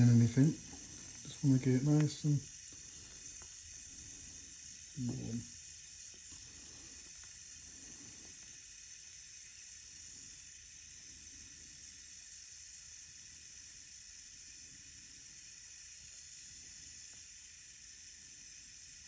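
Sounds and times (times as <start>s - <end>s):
blowtorch flame hissing: 0.0s - 19.0s.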